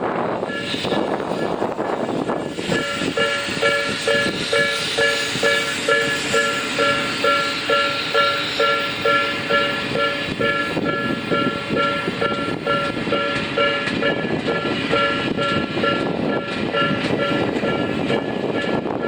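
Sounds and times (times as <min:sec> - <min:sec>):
train wheels clacking: 0:00.4 - 0:19.0
level crossing bell ringing: 0:03.0 - 0:16.1.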